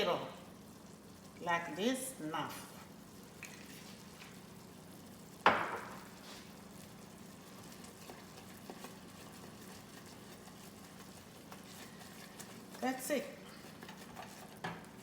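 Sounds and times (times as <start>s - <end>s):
sauce sizzling in a pan: 0.0s - 15.0s
stirring clicks: 7.4s - 15.0s.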